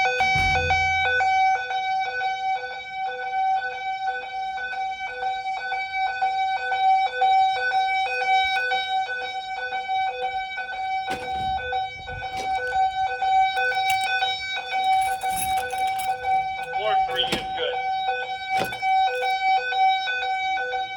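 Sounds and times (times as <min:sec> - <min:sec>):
brief knock: 0:00.2 - 0:01.3
electronic fire alarm tone: 0:16.7 - 0:19.3.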